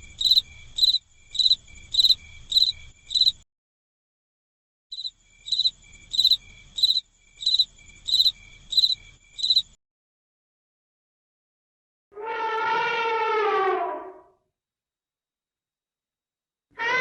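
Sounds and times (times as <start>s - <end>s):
cricket chirping: 0.0s - 3.4s, 4.9s - 9.8s.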